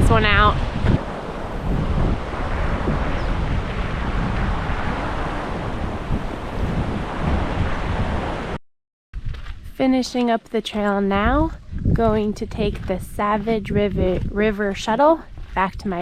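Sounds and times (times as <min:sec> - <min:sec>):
wind buffeting microphone: 0:00.0 - 0:08.6, 0:10.8 - 0:16.0.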